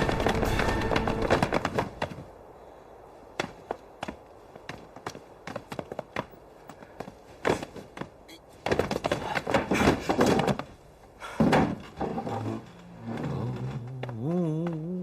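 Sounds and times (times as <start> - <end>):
knocks and thuds: 11.3 - 12.2.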